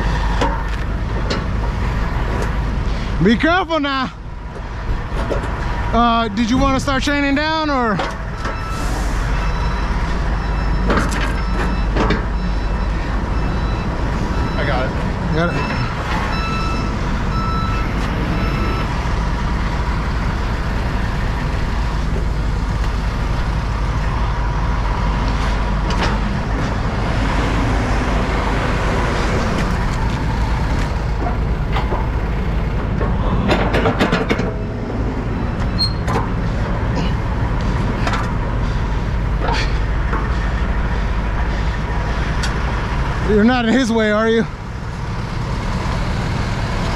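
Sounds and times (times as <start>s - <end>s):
diesel engine rumbling: 0.0s - 46.9s
reversing alarm beeping: 8.3s - 22.0s, 34.5s - 37.3s
steady whine: 15.5s - 35.7s.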